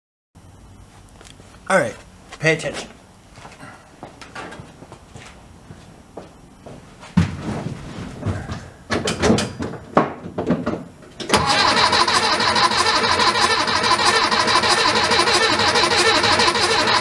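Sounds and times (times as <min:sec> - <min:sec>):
starter motor cranking engine: 0:11.3 - 0:17.0
car engine running: 0:11.4 - 0:17.0.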